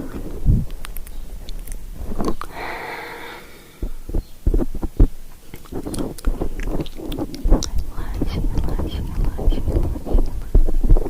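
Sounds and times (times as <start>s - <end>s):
soft breathy hiss: 0.0s - 11.0s
soft clicks and taps at microphone: 4.4s - 11.0s.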